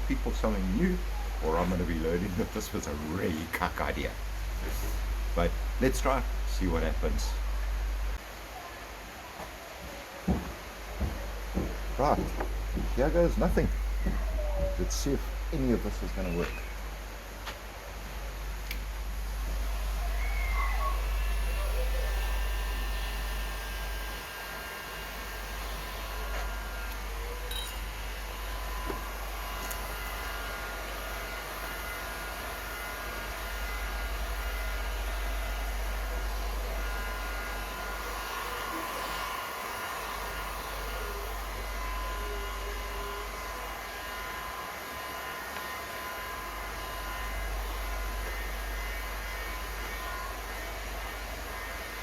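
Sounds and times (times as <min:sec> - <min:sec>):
heat gun fan blowing: 0:00.0 - 0:08.3, 0:09.6 - 0:52.0
faint motor whine: 0:00.0 - 0:52.0.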